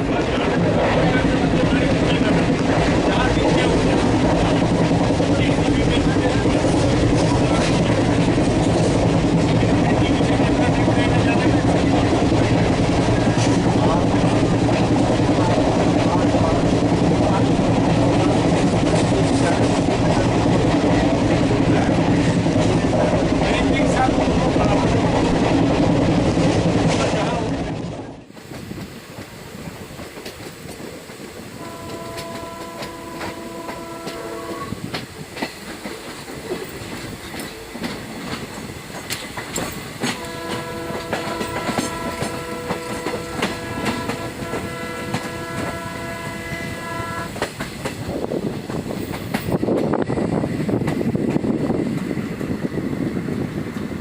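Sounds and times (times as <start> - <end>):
train wheels clattering over rails: 0.0 - 54.0
locomotive horn blasts: 31.6 - 34.8, 40.1 - 47.4.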